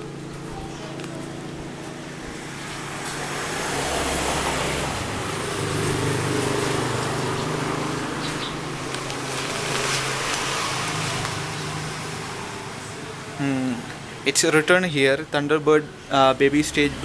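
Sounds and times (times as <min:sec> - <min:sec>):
vehicle passing on road: 0:00.0 - 0:17.0.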